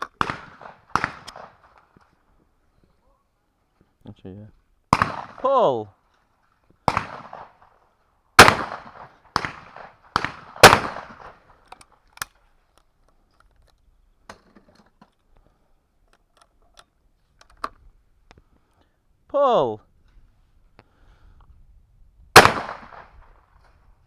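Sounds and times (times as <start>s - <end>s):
shotgun shots with echo: 0.2s - 1.7s, 4.9s - 5.4s, 6.9s - 7.6s, 8.4s - 11.4s, 22.4s - 23.2s.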